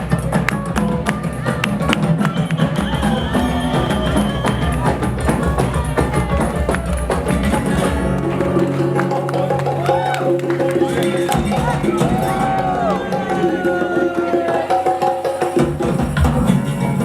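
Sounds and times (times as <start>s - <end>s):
percussion-driven music: 0.0s - 17.0s
hand percussion strokes: 13.3s - 17.0s.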